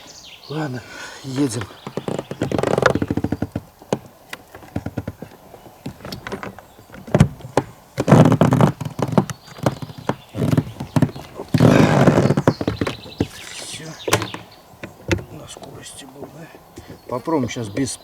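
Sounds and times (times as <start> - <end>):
outboard motor pull-start knocks: 1.4 - 15.8.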